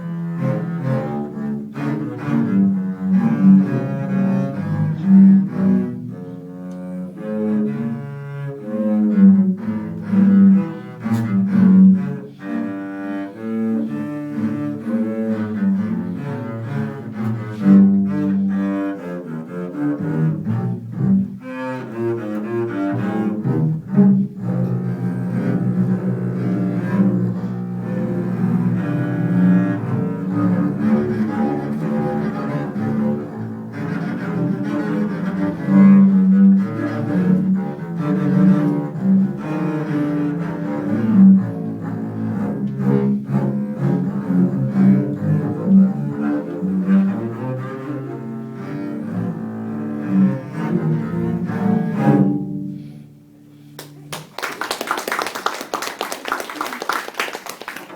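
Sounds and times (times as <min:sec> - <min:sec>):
bowed double basses playing: 0:00.0 - 0:57.9
audience clapping: 0:53.8 - 0:57.9.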